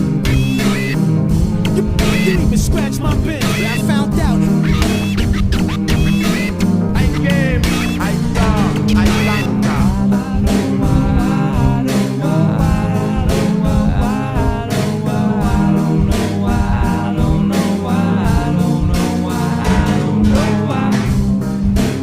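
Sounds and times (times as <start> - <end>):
music with beat bass and guitar: 0.0 - 22.0.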